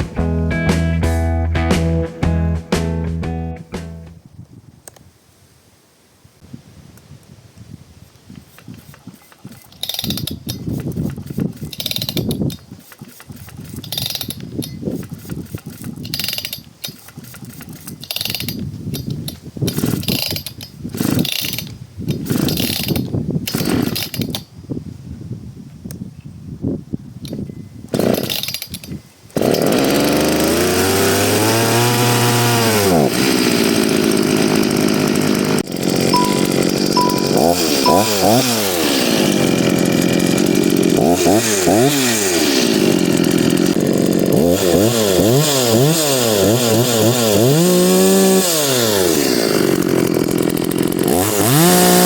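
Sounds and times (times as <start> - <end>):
starter cord pulls: 8.4 - 24.4, 28.0 - 29.7, 36.0 - 41.2
chainsaw engine running: 8.5 - 18.6, 19.7 - 24.2, 29.4 - 52.0.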